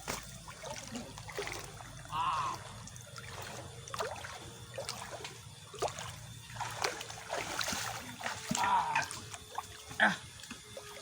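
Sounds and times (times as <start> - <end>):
water splashing and sloshing: 0.0 - 11.0.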